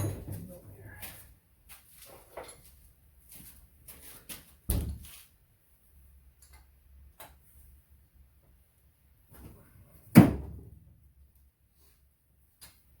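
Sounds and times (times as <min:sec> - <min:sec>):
tools and engine parts clicking: 0:06.4 - 0:07.4.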